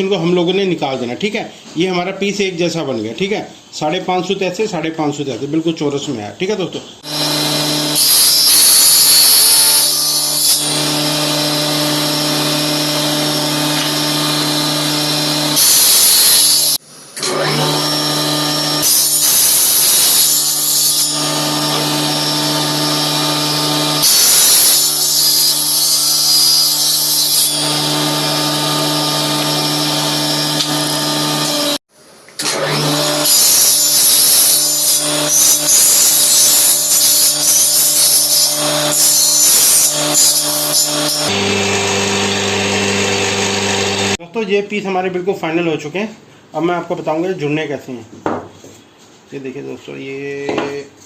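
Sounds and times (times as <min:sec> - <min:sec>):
power tool cutting wood: 0:07.0 - 0:31.8, 0:32.4 - 0:44.2.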